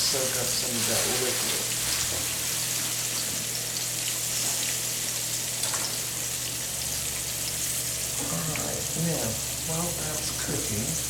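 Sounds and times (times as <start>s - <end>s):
patties sizzling in skillet: 0.0s - 11.0s.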